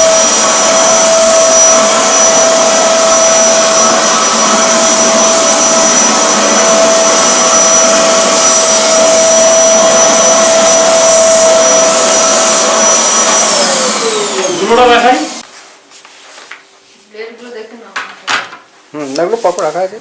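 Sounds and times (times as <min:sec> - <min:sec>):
vacuum cleaner running: 0:00.0 - 0:15.4
vacuum motor spinning down: 0:00.0 - 0:15.4.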